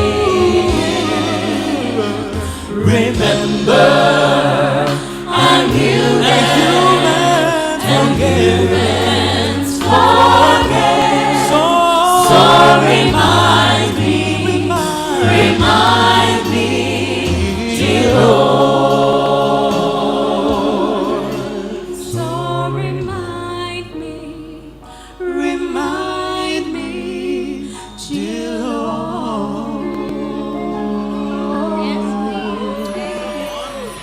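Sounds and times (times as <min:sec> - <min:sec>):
voices singing gospel song: 0:00.0 - 0:34.0.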